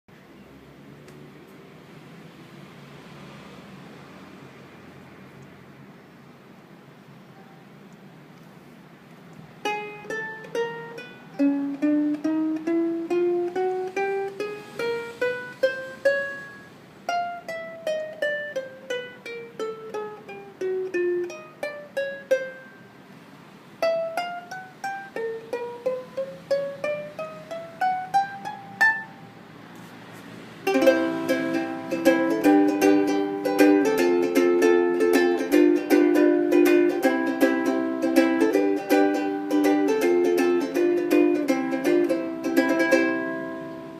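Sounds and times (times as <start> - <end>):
ukulele plucked scales: 9.1 - 29.5, 30.6 - 43.9
ukulele strummed chords: 9.5 - 29.4, 30.6 - 43.9.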